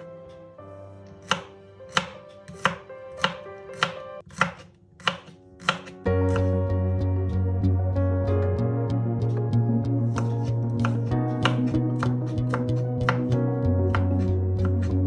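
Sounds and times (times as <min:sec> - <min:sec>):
soft background music: 0:00.0 - 0:15.0
knife chopping on cutting board: 0:01.2 - 0:06.5, 0:10.2 - 0:14.9.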